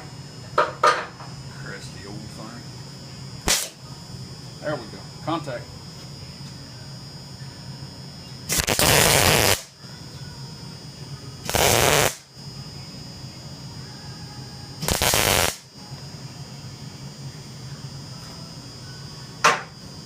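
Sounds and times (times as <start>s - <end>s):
welder arc crackling: 3.4s - 3.8s, 8.4s - 9.7s, 11.4s - 12.3s, 14.8s - 15.7s.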